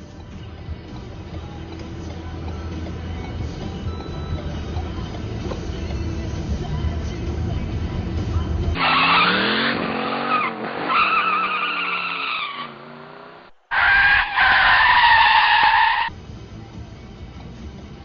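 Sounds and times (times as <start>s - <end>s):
engine revving: 8.7s - 13.6s
tyres squealing: 8.8s - 13.0s, 13.7s - 16.1s.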